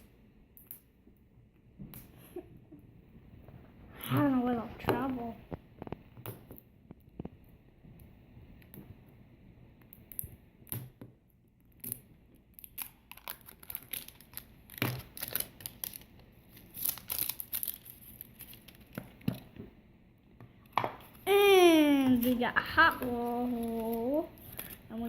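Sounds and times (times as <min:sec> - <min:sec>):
plastic packaging crinkling and tearing: 0:12.5 - 0:19.2, 0:22.0 - 0:25.0.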